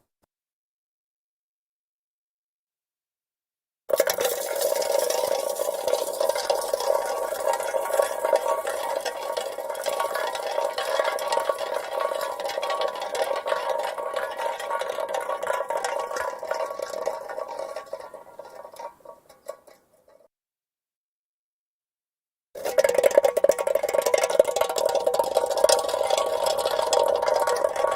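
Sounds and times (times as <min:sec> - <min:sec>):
can rolling over asphalt: 0:03.9 - 0:19.9, 0:22.6 - 0:27.9.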